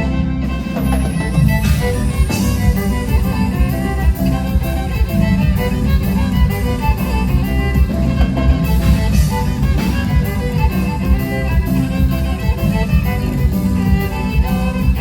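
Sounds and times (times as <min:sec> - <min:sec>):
live band playing: 0:00.0 - 0:15.0
violin-like melody: 0:00.0 - 0:15.0.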